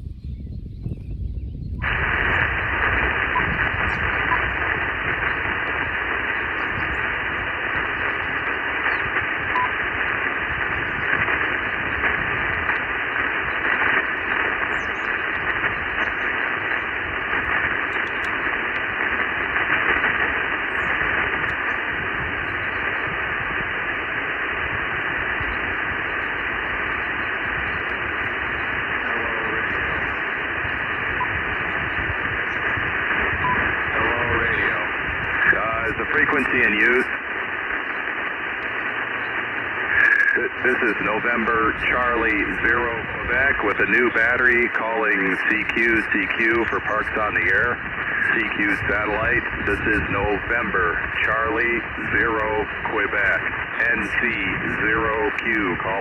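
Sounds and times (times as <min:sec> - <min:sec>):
radio static hissing: 0:01.6 - 0:56.0.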